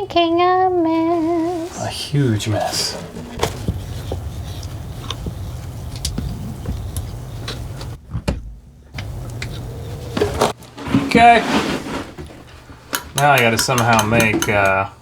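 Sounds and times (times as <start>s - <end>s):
steady low hum: 0.0s - 13.0s
light clicks and taps: 12.9s - 14.8s.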